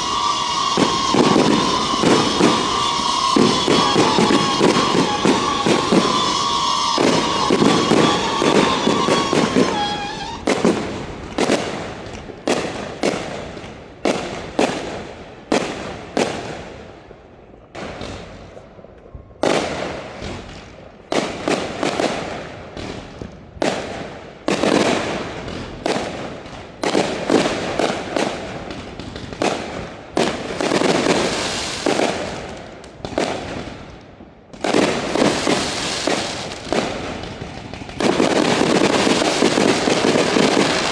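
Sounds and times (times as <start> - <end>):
firework bangs: 0.0 - 40.9
fireworks crackling: 0.0 - 40.9.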